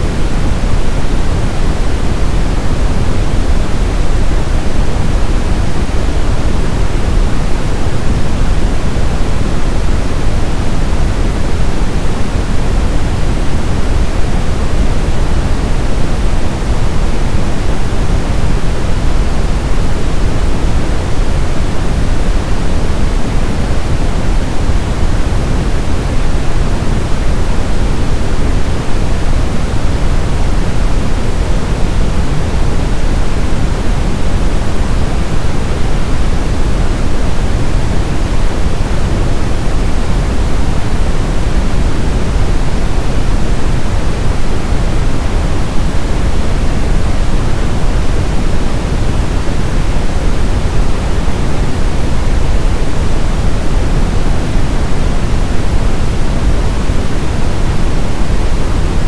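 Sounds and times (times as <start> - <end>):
brown noise hiss: 0.0 - 59.0.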